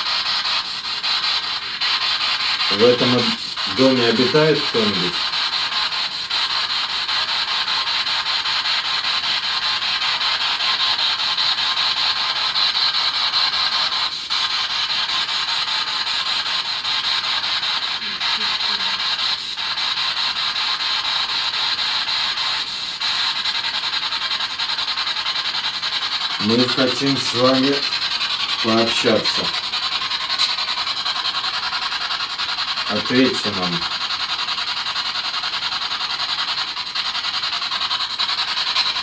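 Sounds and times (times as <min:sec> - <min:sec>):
radio static hiss with fast flutter: 0:00.0 - 0:06.8, 0:15.4 - 0:34.6.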